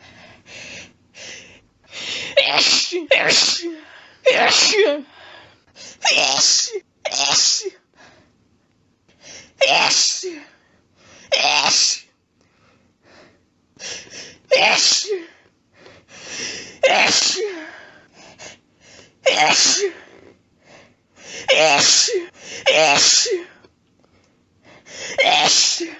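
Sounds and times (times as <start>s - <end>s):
person sneezing: 2.2s - 5.1s, 5.9s - 7.8s, 9.4s - 10.5s, 11.2s - 12.1s, 14.2s - 15.3s, 16.8s - 17.7s, 19.2s - 20.2s, 21.3s - 23.6s, 25.0s - 25.9s.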